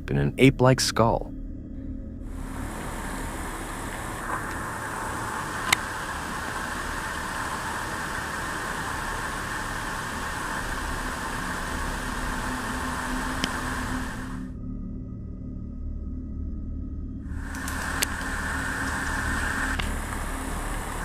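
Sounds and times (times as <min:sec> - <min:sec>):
steady rushing background noise: 0:02.3 - 0:14.5, 0:17.3 - 0:21.0
sharp clicks: 0:17.5 - 0:20.2.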